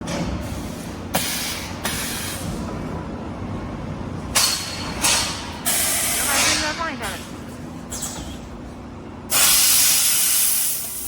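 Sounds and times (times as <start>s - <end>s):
laser cutting machine humming: 5.7s - 7.6s.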